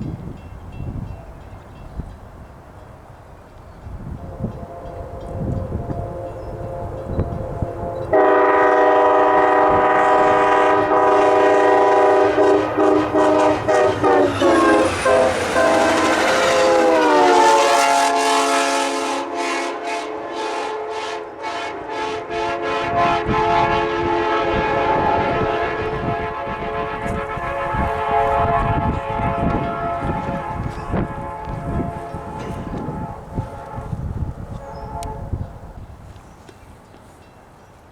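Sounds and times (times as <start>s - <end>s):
train air horn: 4.0s - 35.8s
train wheels clattering over rail joints: 11.7s - 17.6s, 27.1s - 35.1s.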